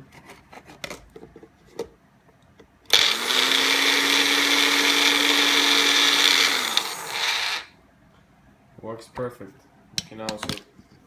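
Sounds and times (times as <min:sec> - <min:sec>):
blender motor whining: 0:02.9 - 0:07.7.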